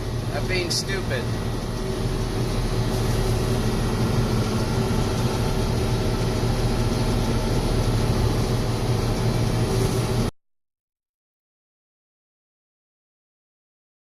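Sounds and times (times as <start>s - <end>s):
combine harvester drone: 0.0s - 10.3s.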